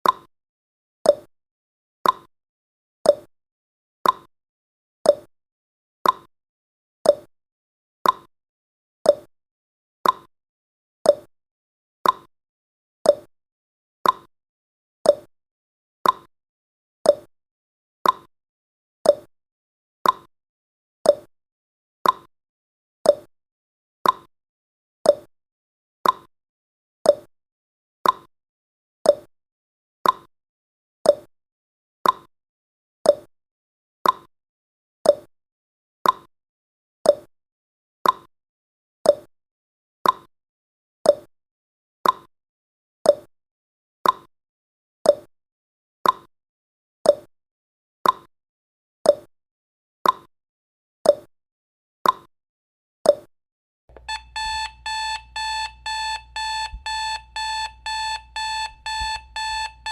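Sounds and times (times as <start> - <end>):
clock ticking: 53.9 - 59.9
electronic alarm beeping: 53.9 - 59.9.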